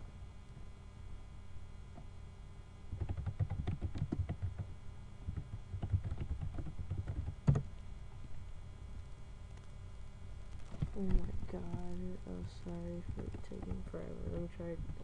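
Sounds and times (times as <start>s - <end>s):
computer keyboard typing: 2.9s - 4.7s, 5.3s - 7.6s, 10.6s - 15.0s.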